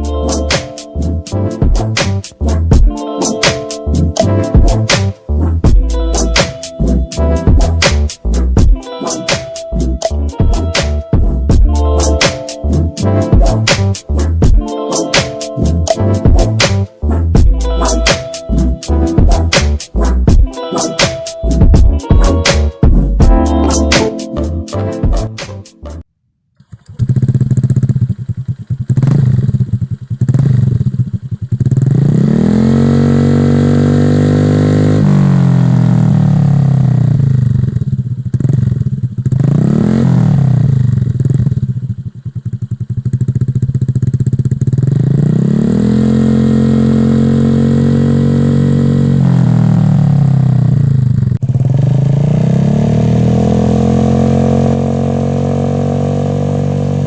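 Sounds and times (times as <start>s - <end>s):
scooter engine revving: 26.7s - 57.0s.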